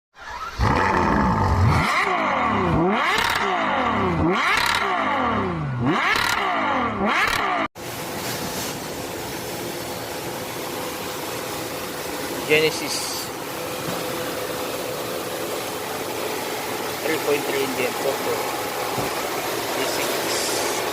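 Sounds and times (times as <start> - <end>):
engine rising and falling in pitch: 0.2 - 7.8
steady mechanical hum: 7.8 - 20.9.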